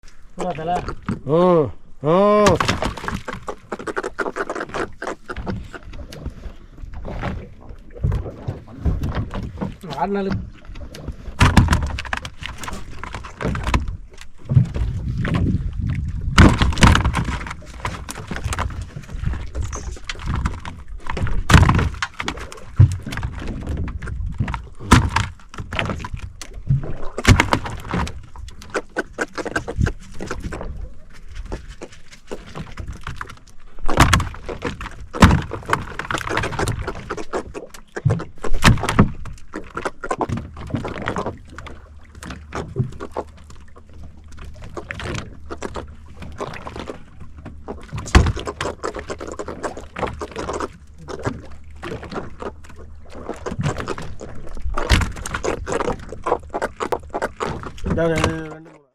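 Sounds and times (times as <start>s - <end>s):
thumps and knocks on boat: 2.4s - 4.0s, 4.7s - 58.6s.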